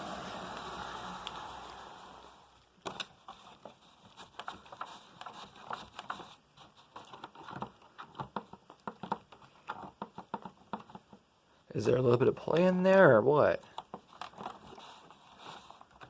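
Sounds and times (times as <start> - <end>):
vacuum cleaner running: 0.0 - 2.6.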